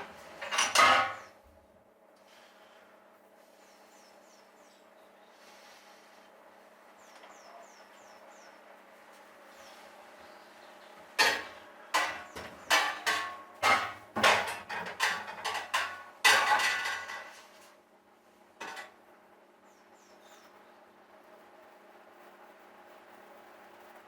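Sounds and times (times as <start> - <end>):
knocks and clatters of hard objects: 11.2 - 17.5, 18.6 - 19.0.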